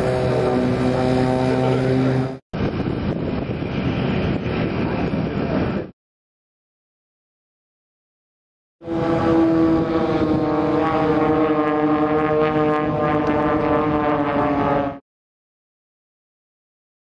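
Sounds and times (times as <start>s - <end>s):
aircraft engines droning: 0.0s - 5.9s, 8.8s - 15.0s.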